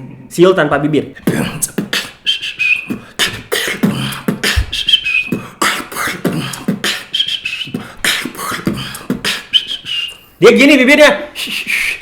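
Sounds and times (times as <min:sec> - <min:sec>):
beatboxing kick and snare: 0:01.3 - 0:10.2
short falling whistle: 0:04.7 - 0:05.3.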